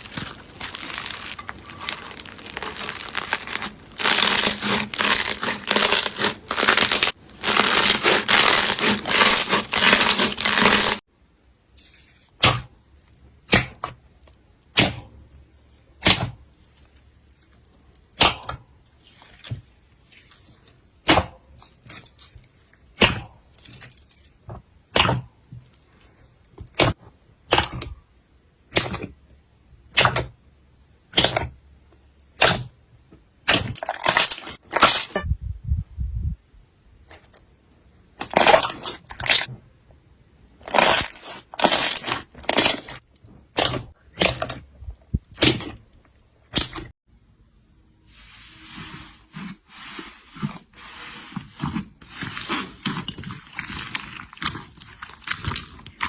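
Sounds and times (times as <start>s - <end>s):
slime squishing and crackling: 0.0s - 11.1s, 33.5s - 35.2s, 38.2s - 39.5s, 40.6s - 44.7s, 51.4s - 56.0s.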